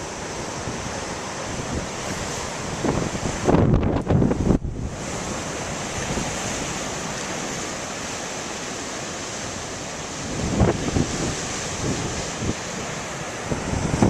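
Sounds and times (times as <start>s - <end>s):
wind buffeting microphone: 0.0s - 6.8s, 10.2s - 12.7s, 13.3s - 14.0s
waves breaking: 0.0s - 14.0s.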